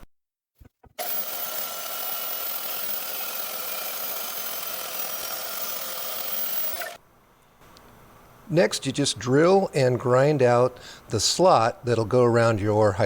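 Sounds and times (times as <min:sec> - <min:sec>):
power tool whining: 0:01.0 - 0:07.0.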